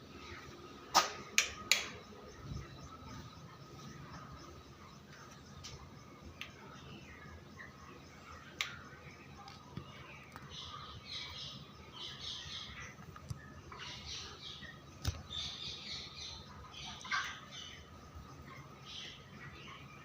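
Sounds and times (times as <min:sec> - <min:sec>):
faint steady hum: 0:00.0 - 0:20.0
sharp clicks: 0:01.0 - 0:02.0
chickens squawking and chirping: 0:10.5 - 0:20.0.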